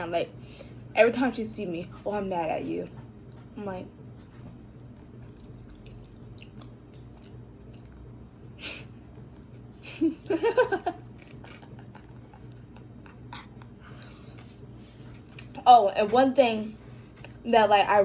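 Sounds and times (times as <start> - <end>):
person chewing food: 4.2 - 8.4, 11.0 - 15.6
short hum or laugh: 8.5 - 14.2.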